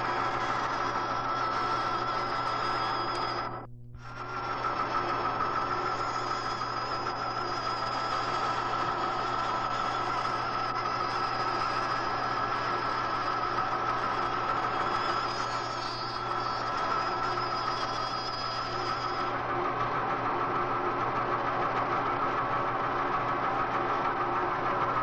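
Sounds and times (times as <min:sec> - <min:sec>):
band saw humming and whining: 0:00.0 - 0:25.0.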